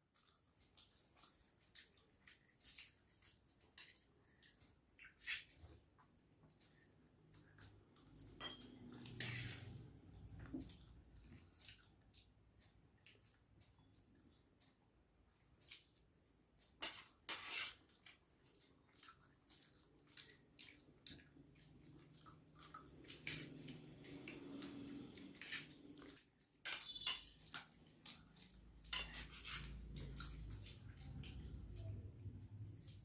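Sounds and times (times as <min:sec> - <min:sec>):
utensil scraping against a plate: 0:08.4 - 0:09.9, 0:16.8 - 0:17.9, 0:23.2 - 0:23.8, 0:24.6 - 0:26.0, 0:26.6 - 0:30.7.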